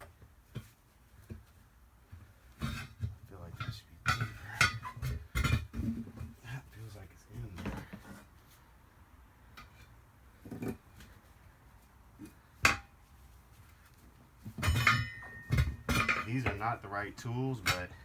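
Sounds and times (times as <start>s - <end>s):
tire irons clanking on wheel rim: 0.0s - 6.6s, 14.4s - 18.0s
sharp metal clank with ring: 14.6s - 16.2s
ringing metallic clatter: 14.6s - 16.8s.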